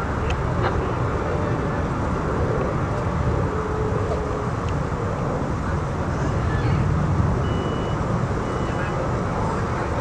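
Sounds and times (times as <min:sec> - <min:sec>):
jet engines rumbling: 0:00.0 - 0:10.0
faint steady tone: 0:07.4 - 0:10.0.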